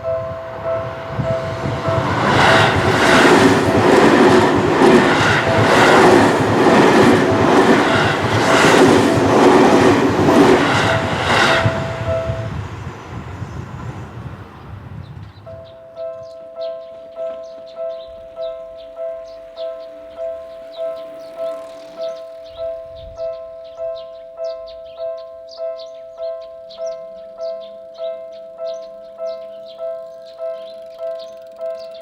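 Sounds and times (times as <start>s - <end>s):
crossing warning bell: 0.0s - 14.2s, 15.4s - 32.0s
train wheels rushing and clacking: 0.0s - 14.9s.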